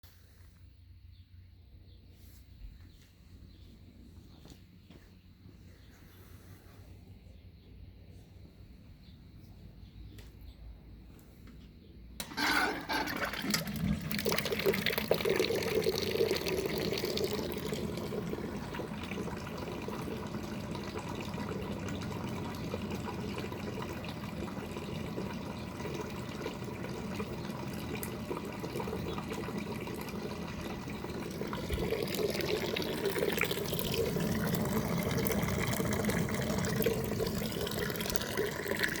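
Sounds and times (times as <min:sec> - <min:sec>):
shower water running: 0:12.3 - 0:39.0.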